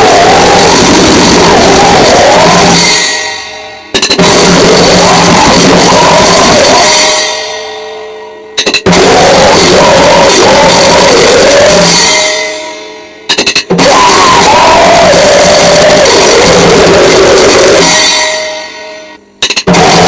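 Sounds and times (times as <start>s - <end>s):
distorted noise: 0.0s - 20.0s
pounding drums: 0.0s - 20.0s
person yelling vocals: 4.6s - 7.0s, 8.9s - 11.9s, 13.8s - 17.9s.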